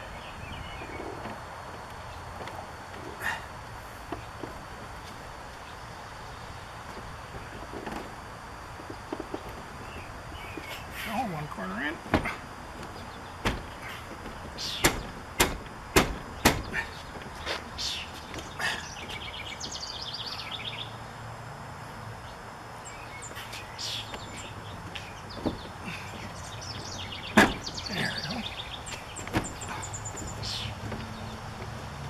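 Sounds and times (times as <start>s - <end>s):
birds chirping: 0.0s - 32.0s
air conditioner knocking into frame: 11.9s - 17.0s, 25.3s - 28.2s, 28.9s - 32.0s.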